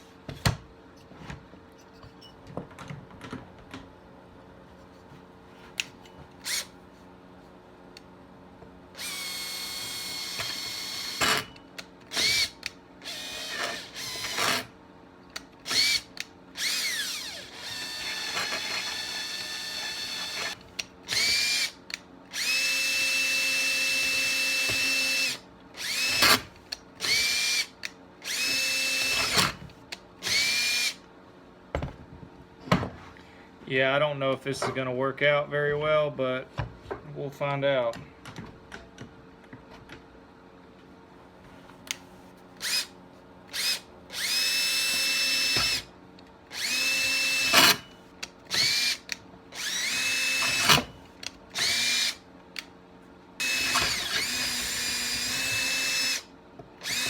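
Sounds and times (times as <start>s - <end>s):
electric drill whining: 6.4s - 6.7s, 9.0s - 11.5s, 12.1s - 14.7s, 15.7s - 29.6s, 30.2s - 31.0s, 42.6s - 42.9s, 43.5s - 45.9s, 46.5s - 47.9s, 48.5s - 52.2s, 53.4s - 57.0s.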